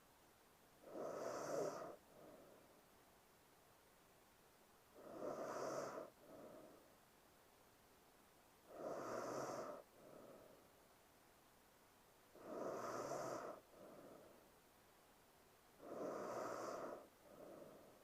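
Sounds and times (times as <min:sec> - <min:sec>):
woman heavy sleep breathing: 0:00.8 - 0:02.8, 0:04.9 - 0:07.0, 0:08.7 - 0:10.8, 0:12.3 - 0:14.5, 0:15.8 - 0:18.0.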